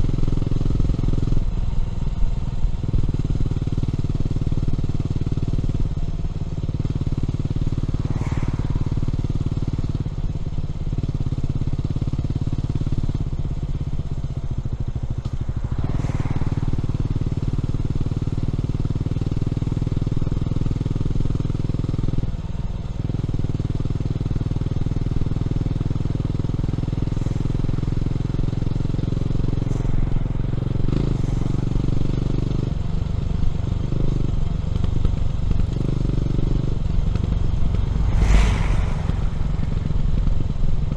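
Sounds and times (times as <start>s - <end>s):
motorcycle engine running: 0.0s - 40.9s.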